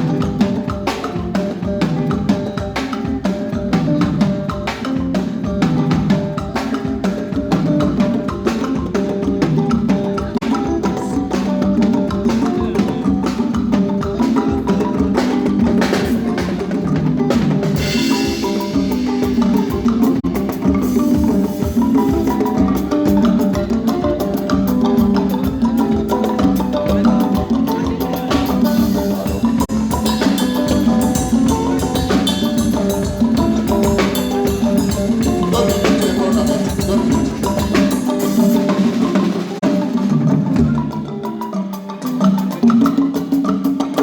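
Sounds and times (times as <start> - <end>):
live band playing rumba: 0.0 - 44.0.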